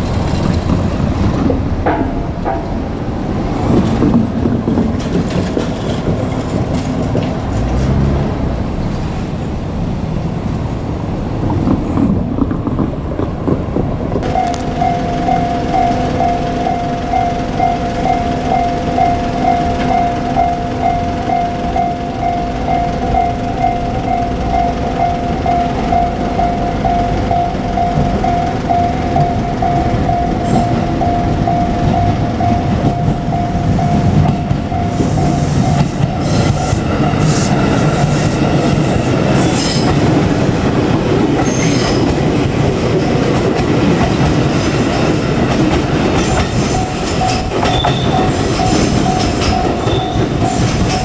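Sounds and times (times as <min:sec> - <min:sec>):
train rumbling past: 0:00.0 - 0:51.0
level-crossing alarm dinging: 0:14.2 - 0:39.9, 0:44.3 - 0:51.0.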